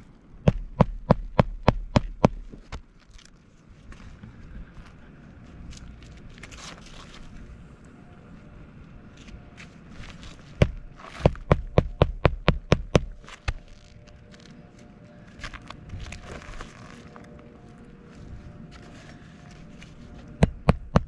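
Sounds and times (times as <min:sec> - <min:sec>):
hammer striking roofing nails: 0:00.4 - 0:02.4, 0:10.6 - 0:13.2, 0:20.4 - 0:21.0.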